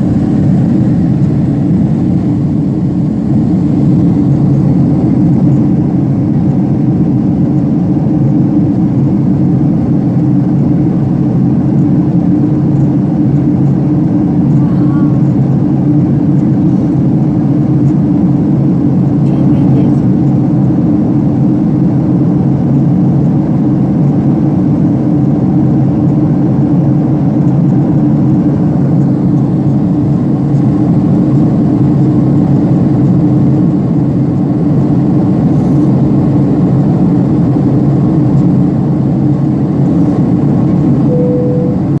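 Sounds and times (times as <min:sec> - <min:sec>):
airliner cabin engine drone: 0:00.0 - 0:42.0
short steady tone: 0:41.0 - 0:42.0.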